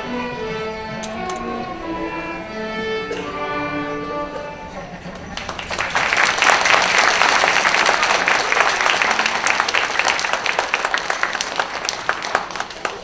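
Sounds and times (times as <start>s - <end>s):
audience applauding: 5.0s - 13.0s.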